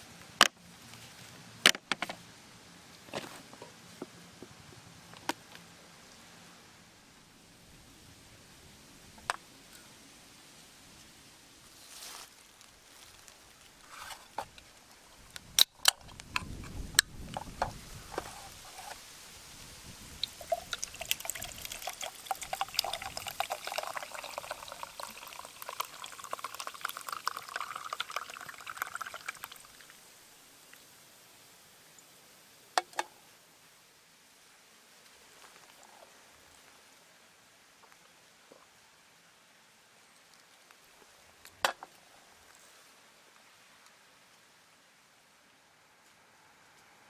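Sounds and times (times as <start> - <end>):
liquid pouring into a pot: 20.2 - 29.9.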